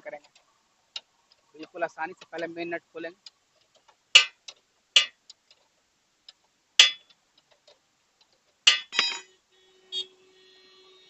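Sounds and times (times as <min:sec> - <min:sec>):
metal spanner knocking on nut: 0:04.2 - 0:04.4, 0:05.0 - 0:05.2, 0:06.8 - 0:07.1, 0:08.7 - 0:09.3.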